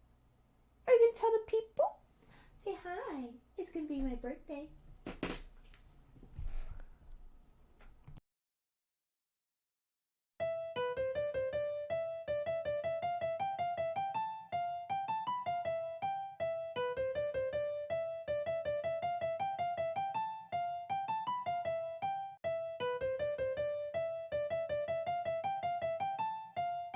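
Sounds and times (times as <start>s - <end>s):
piano-like keyboard melody: 10.4s - 26.9s.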